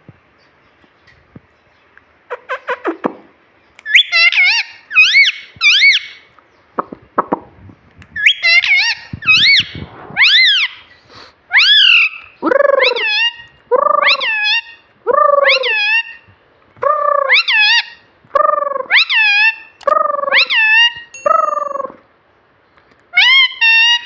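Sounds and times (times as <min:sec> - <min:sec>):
parrot calling: 0:02.3 - 0:06.3, 0:08.2 - 0:22.1, 0:23.1 - 0:24.0.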